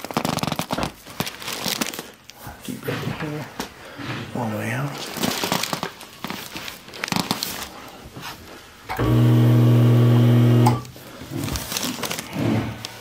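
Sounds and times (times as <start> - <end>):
soft rustling: 0.9 - 8.8, 11.0 - 13.0
electric motor hum: 8.9 - 10.9.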